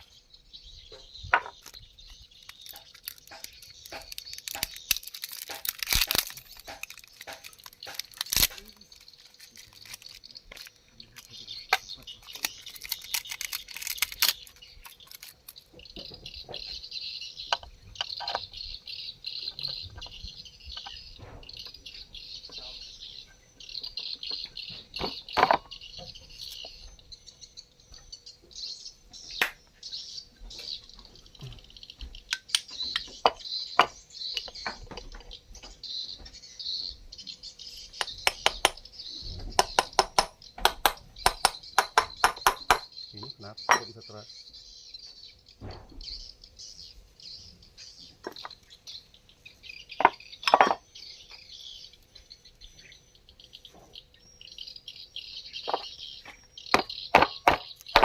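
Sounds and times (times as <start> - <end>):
high pulsing chirping: 0.0 - 58.0
metallic clicks of hand tools: 2.4 - 8.8.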